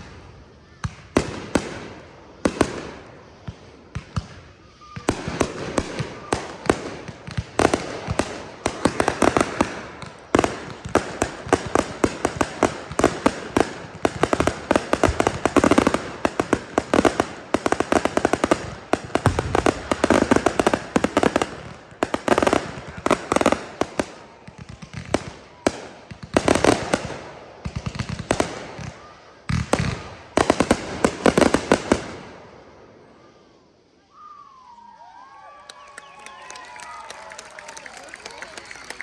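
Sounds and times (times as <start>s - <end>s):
fireworks bangs and crackles: 0.0s - 34.1s, 36.3s - 39.0s.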